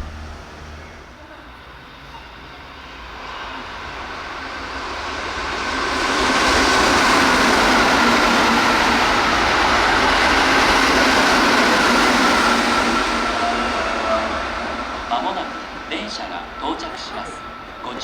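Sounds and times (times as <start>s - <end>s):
train passing at speed: 0.0s - 18.0s
faint high whine: 12.5s - 18.0s.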